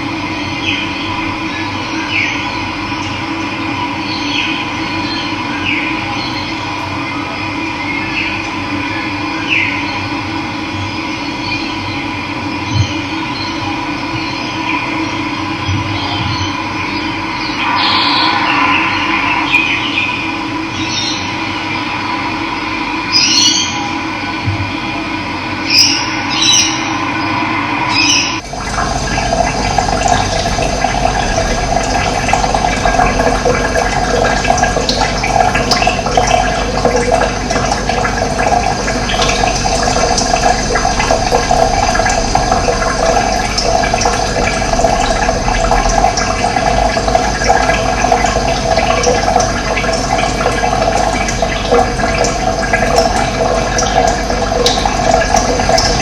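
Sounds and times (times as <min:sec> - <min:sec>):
running water rushing: 0:17.3 - 0:22.1, 0:25.7 - 0:56.0.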